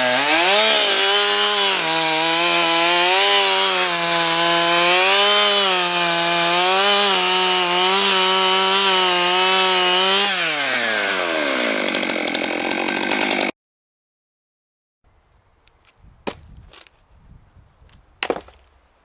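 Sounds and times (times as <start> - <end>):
chainsaw cutting log: 0.0 - 13.6, 18.2 - 18.7.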